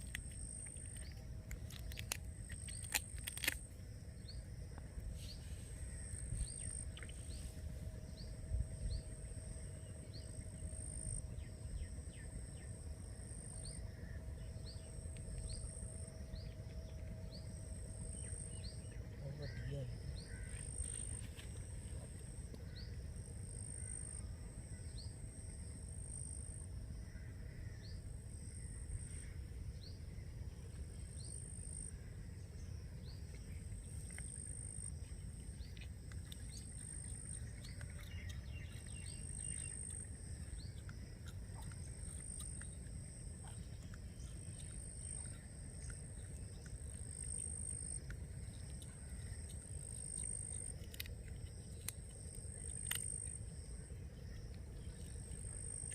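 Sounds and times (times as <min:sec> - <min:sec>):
steady low rumble: 0:00.0 - 0:19.2.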